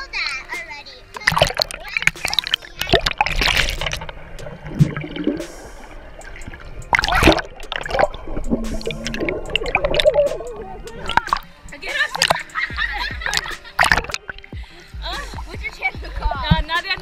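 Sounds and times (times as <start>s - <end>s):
sudden splashes: 1.2s - 14.7s
water splashing and running: 1.2s - 17.0s.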